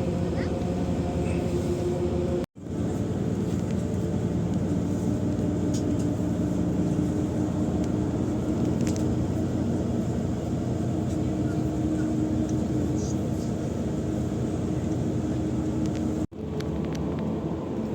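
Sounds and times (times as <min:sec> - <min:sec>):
vehicle engine drone: 0:00.0 - 0:17.9.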